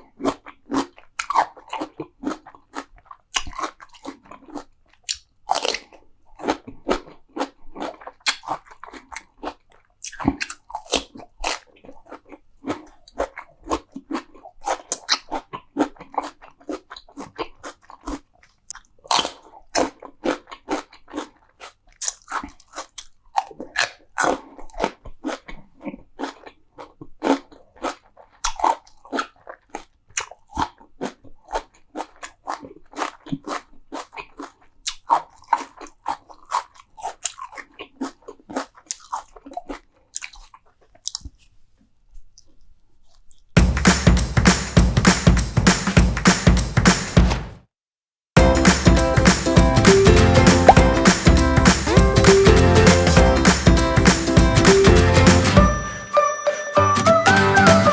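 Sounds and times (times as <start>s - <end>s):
crunching and chewing food: 0.0s - 43.6s.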